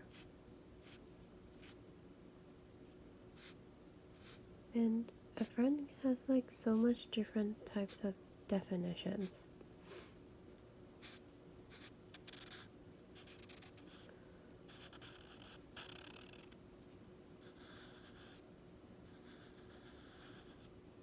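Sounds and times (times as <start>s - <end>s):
drawing tool scratching paper: 11.0s - 14.0s, 14.7s - 16.6s, 17.5s - 18.4s, 19.1s - 20.7s.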